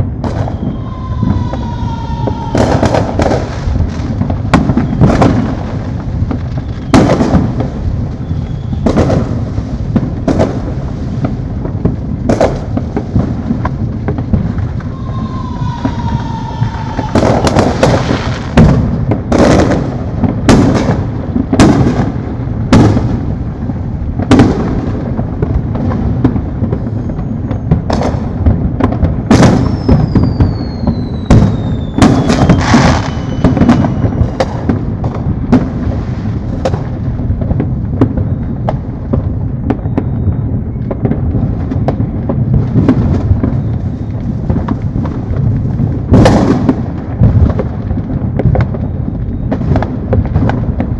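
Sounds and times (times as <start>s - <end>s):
distant fireworks rumble: 0.0s - 50.9s
loud firework bangs: 0.0s - 50.9s
firework whistle gliding down: 0.2s - 5.6s, 6.6s - 9.2s, 14.6s - 18.7s, 26.7s - 27.8s, 29.4s - 34.6s, 39.7s - 40.9s.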